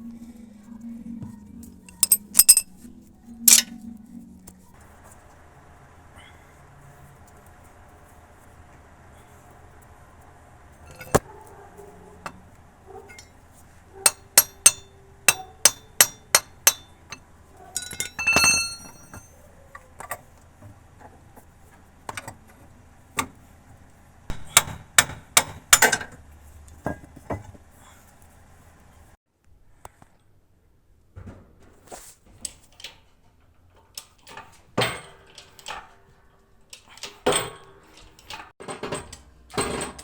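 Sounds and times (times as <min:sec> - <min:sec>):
hammer striking steel: 0:01.9 - 0:02.7, 0:03.5 - 0:03.8, 0:10.9 - 0:11.2, 0:14.0 - 0:17.2, 0:17.8 - 0:19.3.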